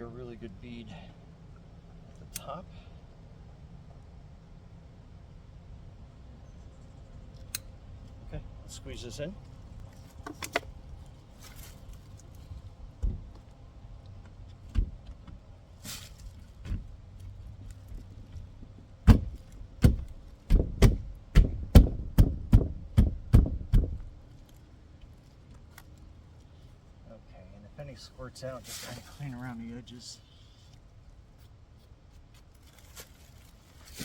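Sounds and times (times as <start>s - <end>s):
window frame knocking: 19.1s - 24.0s.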